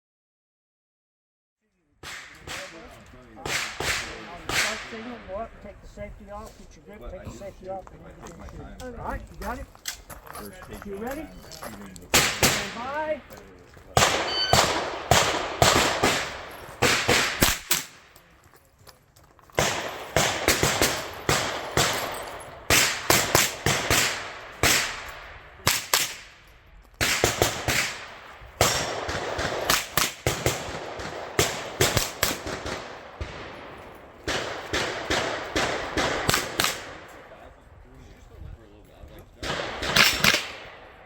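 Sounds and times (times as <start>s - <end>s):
handgun shots cracking: 14.0s - 18.0s, 39.8s - 40.6s.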